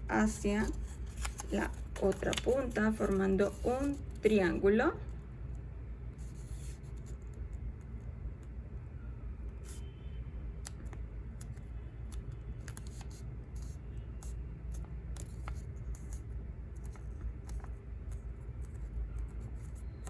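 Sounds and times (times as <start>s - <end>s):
paper being folded: 0.6s - 4.1s
paper crinkles and scrapes: 0.6s - 4.2s.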